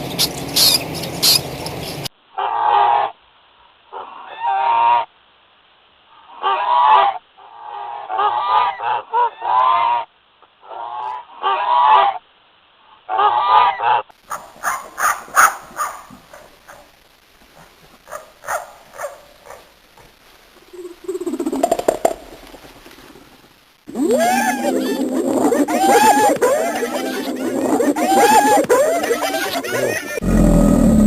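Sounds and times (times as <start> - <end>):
geese honking: 23.9 - 30.2.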